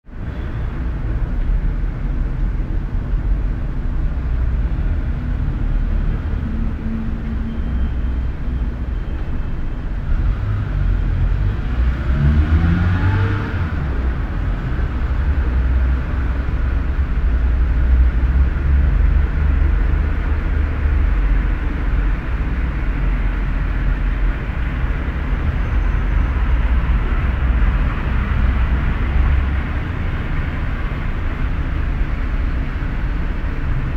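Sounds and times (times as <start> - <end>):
low rumble of cars and engines: 0.0 - 33.9
car engine accelerating: 10.1 - 31.7.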